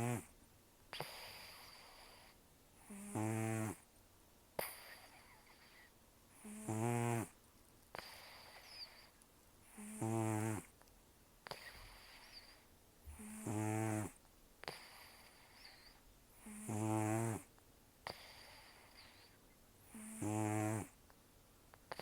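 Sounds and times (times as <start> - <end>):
cat snoring: 0.0 - 0.3, 0.9 - 3.8, 4.6 - 10.7, 11.4 - 21.0
faint nasal breaths: 0.9 - 3.5, 4.6 - 6.8, 7.9 - 10.2, 11.4 - 14.0, 14.6 - 17.2, 18.0 - 20.7, 21.7 - 22.0.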